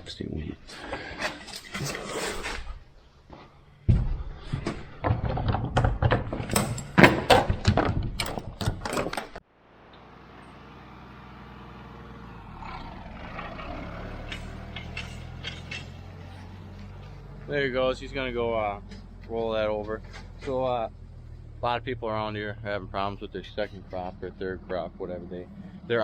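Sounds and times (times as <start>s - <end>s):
clattering knocks and rumble: 2.7s - 9.4s, 13.2s - 26.0s
tractor diesel engine running: 9.4s - 26.0s.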